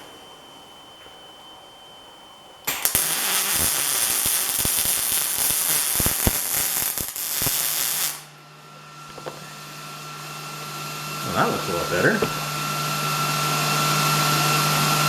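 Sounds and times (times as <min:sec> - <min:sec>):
welding arc crackling hiss: 0:02.6 - 0:08.4, 0:11.2 - 0:12.7
welding spatter pops: 0:02.7 - 0:08.3.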